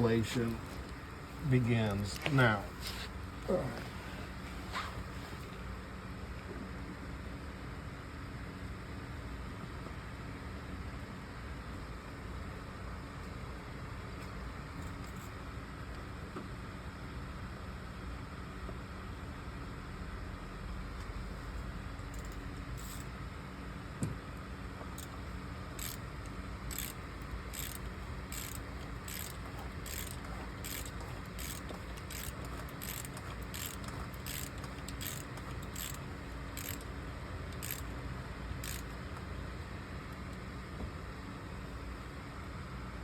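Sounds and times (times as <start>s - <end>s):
ratchet wrench clicking: 22.1s - 23.1s, 25.8s - 36.9s, 37.5s - 37.9s, 38.6s - 39.0s.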